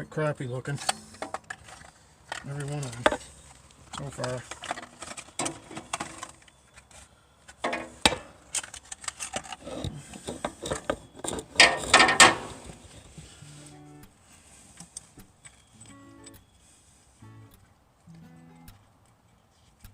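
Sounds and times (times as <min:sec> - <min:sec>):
metal clinks and knocks: 0:00.8 - 0:13.2, 0:15.4 - 0:16.5.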